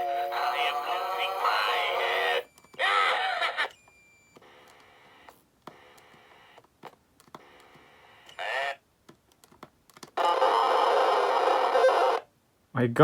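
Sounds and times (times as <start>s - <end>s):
distorted toy voice: 0.0s - 3.8s, 8.3s - 8.8s, 10.2s - 12.2s.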